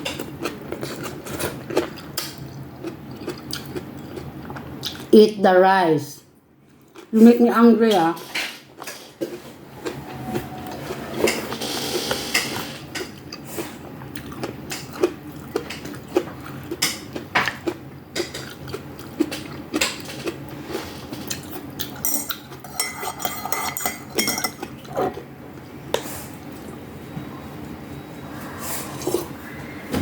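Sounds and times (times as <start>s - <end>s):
cutlery clinking against dishes: 22.0s - 25.2s.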